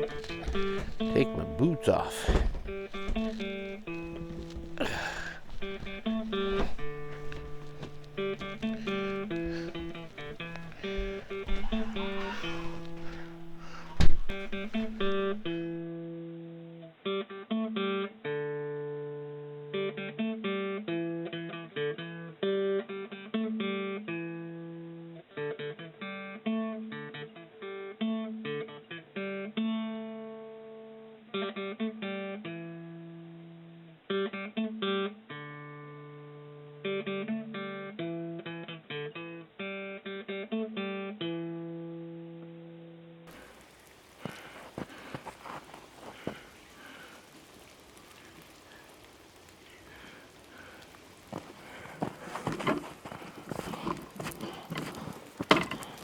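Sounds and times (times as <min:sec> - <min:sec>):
acoustic guitar plucked and strummed: 0:00.0 - 0:43.5.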